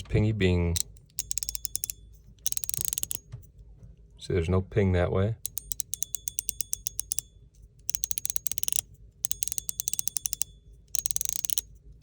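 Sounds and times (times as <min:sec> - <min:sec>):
fidget slider rapid clicks: 0:01.1 - 0:03.2, 0:07.9 - 0:11.6.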